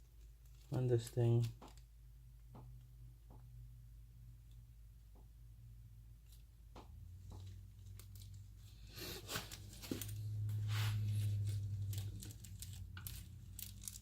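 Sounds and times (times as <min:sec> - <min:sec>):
packaging crinkling and rustling: 0:07.4 - 0:14.0.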